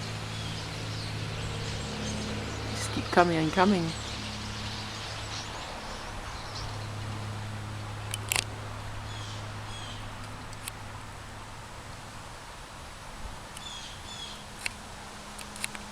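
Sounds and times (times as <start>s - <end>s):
birds chirping faintly: 0.0s - 11.1s, 13.5s - 14.7s
outdoor hiss and hum: 0.0s - 15.9s
sharp clicks: 8.1s - 8.5s, 15.4s - 15.9s.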